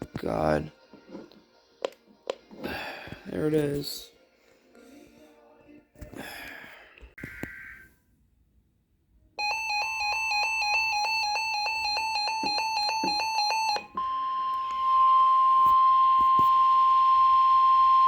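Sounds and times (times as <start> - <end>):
pulsing electronic alert beep: 9.4 - 14.3
steady warning alarm tone: 9.4 - 18.0.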